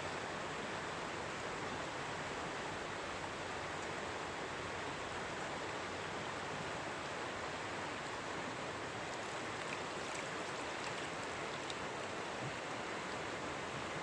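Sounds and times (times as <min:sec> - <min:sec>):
river water rushing: 0:00.0 - 0:14.0.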